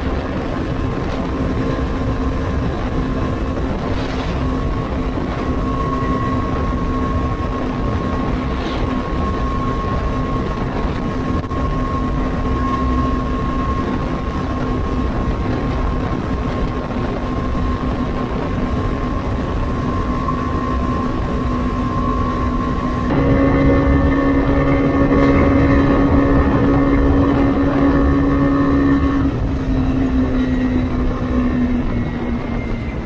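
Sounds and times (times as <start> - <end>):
wind and road noise: 0.0 - 33.0
motorcycle engine cruising: 18.6 - 33.0.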